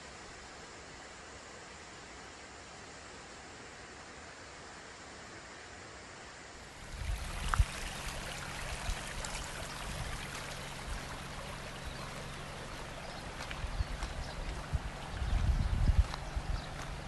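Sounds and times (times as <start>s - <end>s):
floodwater rushing: 6.6s - 17.0s.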